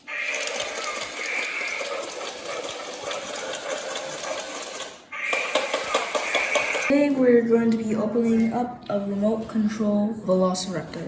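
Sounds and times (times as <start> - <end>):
toy motor whirring and clicking: 0.1 - 6.9.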